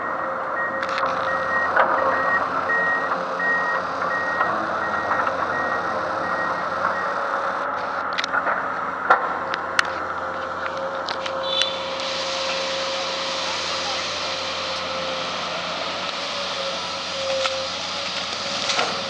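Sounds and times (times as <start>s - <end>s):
backup alarm beeping: 0.0s - 7.6s
excavator engine running: 0.0s - 19.0s.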